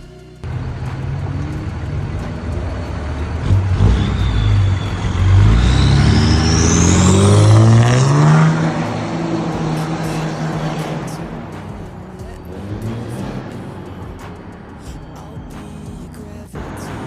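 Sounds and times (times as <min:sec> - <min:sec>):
diesel engine accelerating: 0:00.4 - 0:17.0
turbo whistle: 0:03.2 - 0:08.4.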